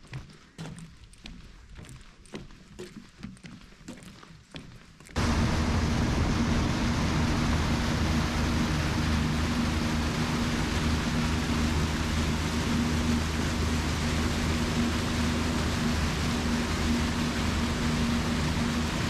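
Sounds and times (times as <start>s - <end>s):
engine running: 5.2s - 19.0s
loud rushing hiss: 5.2s - 19.0s.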